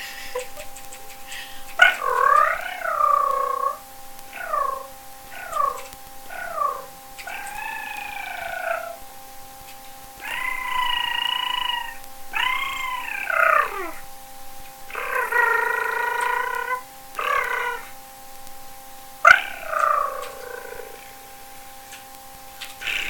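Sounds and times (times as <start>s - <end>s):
woman making cat-like trills: 0.0s - 9.0s, 10.2s - 14.0s, 14.9s - 18.0s, 19.2s - 21.2s.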